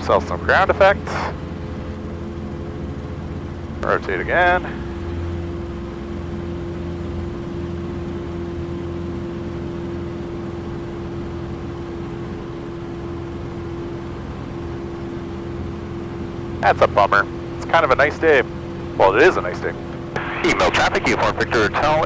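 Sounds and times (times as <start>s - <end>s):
airplane engine and propeller drone: 0.0s - 22.0s.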